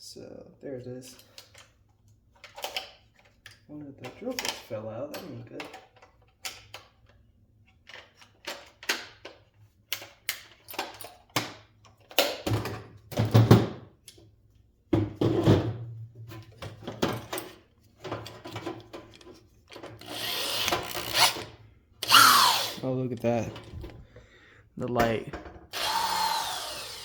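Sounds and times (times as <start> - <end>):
tools and metal parts clicking: 4.0 - 7.2, 9.9 - 12.2.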